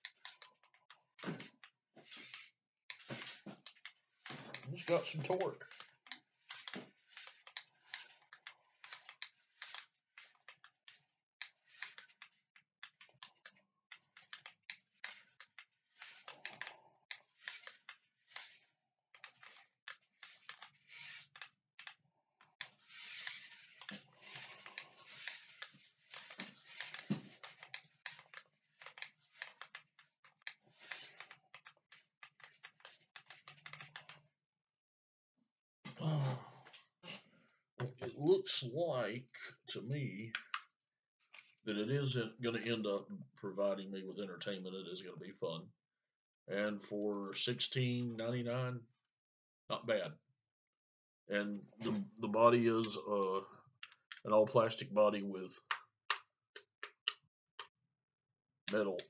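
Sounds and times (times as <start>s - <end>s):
toy truck clicking and rattling: 0.0s - 34.3s.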